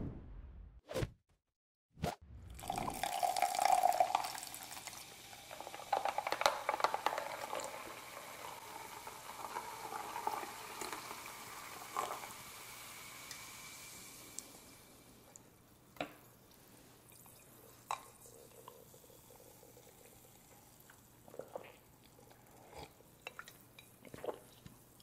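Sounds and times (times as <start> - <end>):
slurp: 20.9 - 24.8.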